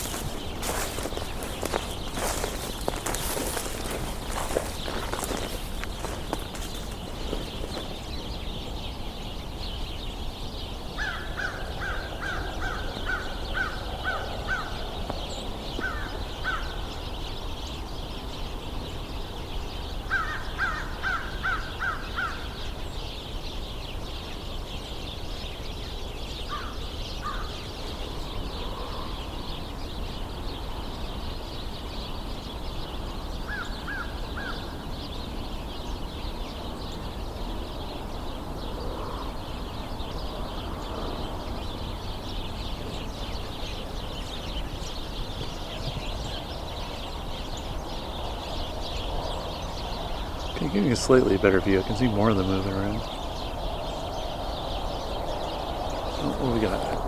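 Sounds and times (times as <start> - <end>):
sparrow flock chirping: 0.0 - 57.0
crows cawing: 11.0 - 15.0, 15.8 - 16.8, 20.1 - 22.6, 26.5 - 27.6, 33.5 - 34.8.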